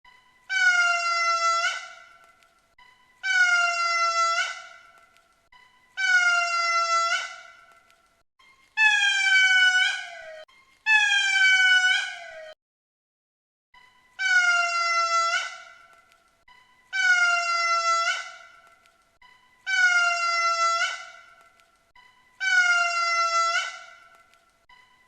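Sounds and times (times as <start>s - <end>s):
lemur calling: 19.7s - 21.4s.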